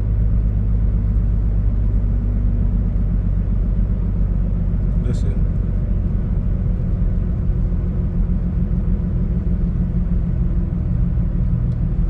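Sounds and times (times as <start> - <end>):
tire road noise rumble: 0.0 - 12.0.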